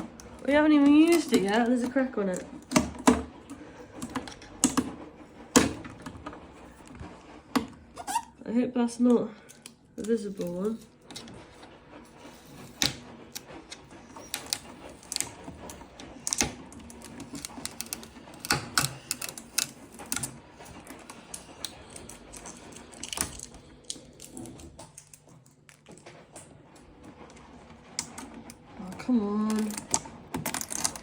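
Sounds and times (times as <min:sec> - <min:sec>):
hard plastic parts clicking: 0:14.3 - 0:26.0.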